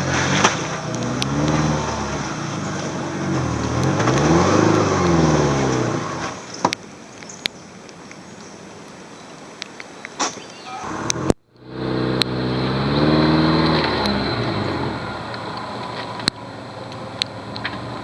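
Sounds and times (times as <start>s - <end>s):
car engine revving: 0.0s - 6.4s, 10.8s - 18.0s.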